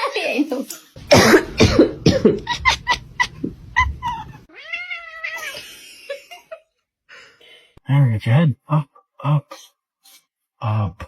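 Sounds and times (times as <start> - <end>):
cat chirping: 3.1 - 5.5
cat meowing: 3.8 - 5.6.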